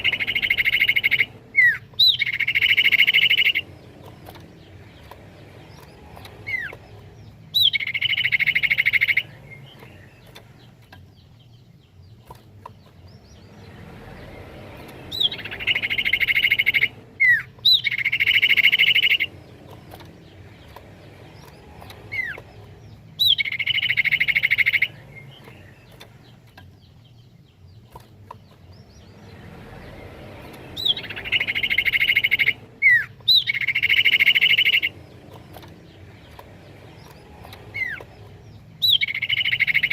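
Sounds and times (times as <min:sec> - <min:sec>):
bird whistle and buzzy trill: 0:00.0 - 0:03.8, 0:07.4 - 0:10.1, 0:15.1 - 0:19.4, 0:23.2 - 0:25.8, 0:30.8 - 0:35.0, 0:38.8 - 0:39.9.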